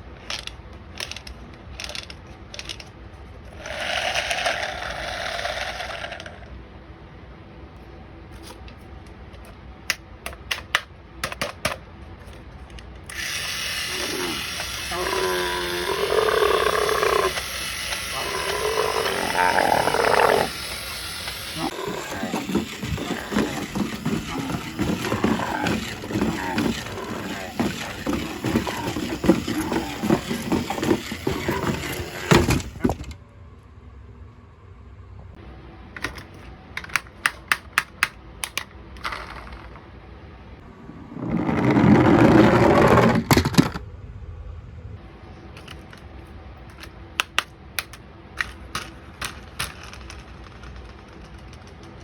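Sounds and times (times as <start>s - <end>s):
faint steady hum: 0.0s - 41.4s
toy electronic animal sound: 13.2s - 32.6s
sharp clicks and taps: 36.8s - 38.7s.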